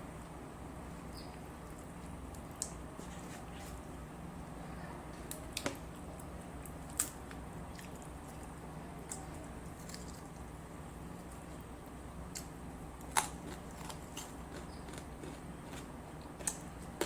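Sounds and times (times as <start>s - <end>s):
steady low hum: 0.0s - 17.0s
wet chewing: 5.6s - 10.5s, 12.3s - 17.0s.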